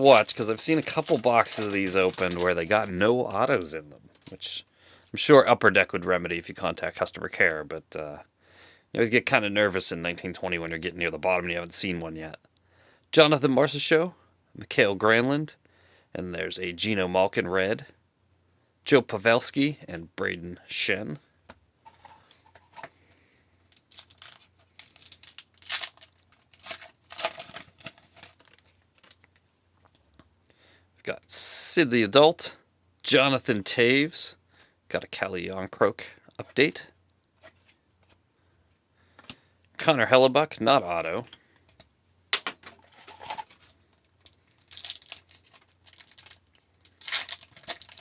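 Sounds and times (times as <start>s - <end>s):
wrapper tearing and crinkling: 0.0s - 4.4s, 23.7s - 29.3s, 42.6s - 48.0s.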